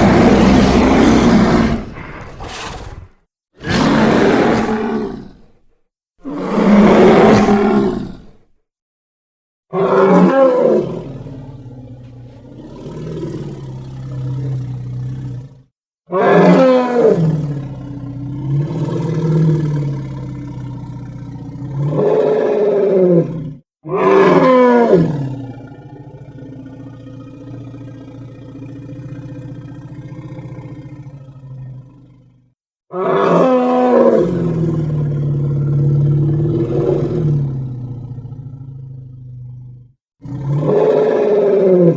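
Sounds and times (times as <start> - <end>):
animated character roaring: 0.0 - 2.0, 21.7 - 25.6, 32.9 - 37.5.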